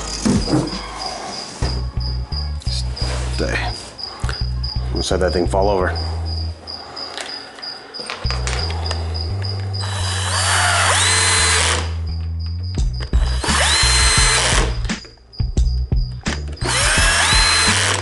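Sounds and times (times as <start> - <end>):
power drill driving screws: 9.8 - 11.9, 13.2 - 14.7, 16.6 - 18.0.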